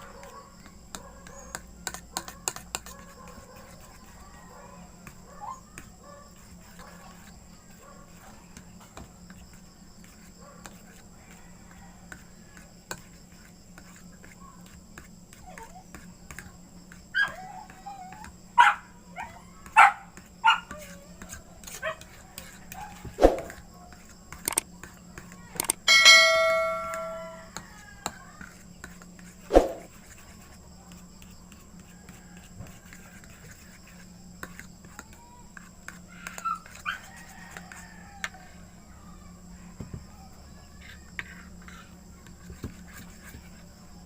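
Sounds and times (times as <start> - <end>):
dog barking: 0.0 - 1.5, 4.4 - 7.1, 18.6 - 20.7
dog yipping: 4.5 - 6.2, 17.2 - 21.1.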